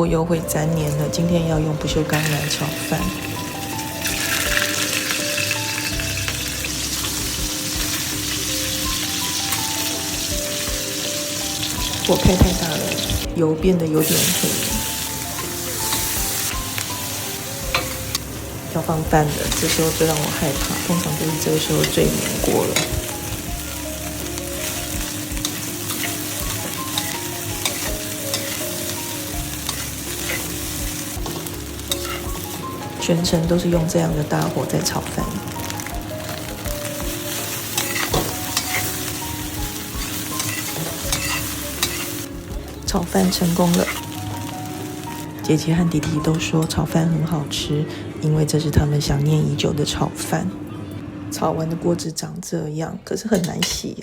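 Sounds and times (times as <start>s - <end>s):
soft background music: 0.0s - 54.0s
hot oil sizzling in a pan: 0.8s - 13.3s, 14.0s - 45.6s
spatula clicking and scraping pan: 24.1s - 32.6s, 35.6s - 42.3s.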